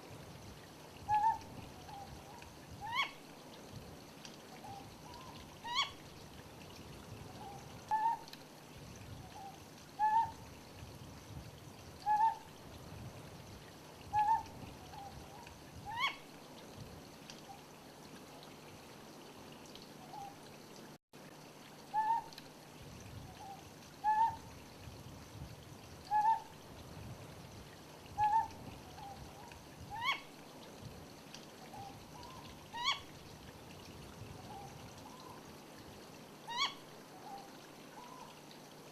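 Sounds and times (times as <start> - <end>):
owl hooting: 1.1 - 3.2, 4.6 - 6.0, 9.4 - 10.4, 12.0 - 12.4, 14.1 - 15.2, 15.9 - 16.2, 21.9 - 22.3, 23.4 - 24.4, 26.1 - 26.5, 28.2 - 30.3, 31.7 - 33.1, 36.5 - 38.3.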